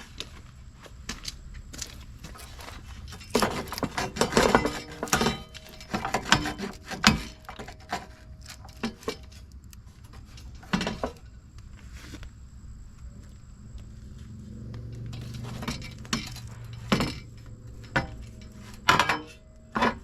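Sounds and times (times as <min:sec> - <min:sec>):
metal and plastic parts clattering: 0:02.2 - 0:11.3, 0:15.3 - 0:20.0.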